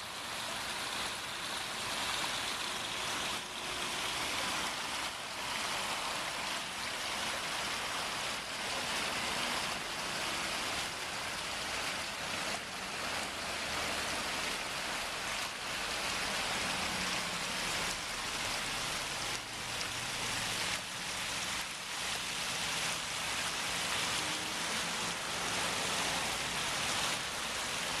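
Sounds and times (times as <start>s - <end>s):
waterfall splashing: 0.0s - 28.0s.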